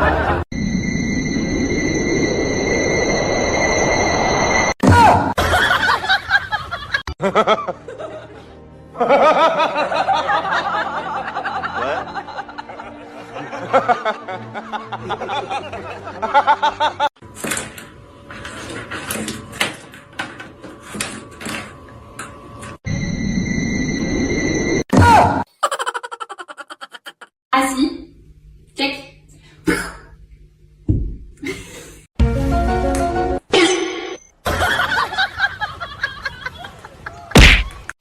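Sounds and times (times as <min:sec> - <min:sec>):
bursts of laughter: 0:05.4 - 0:17.1, 0:25.6 - 0:27.3
music: 0:07.2 - 0:17.1, 0:32.2 - 0:33.4.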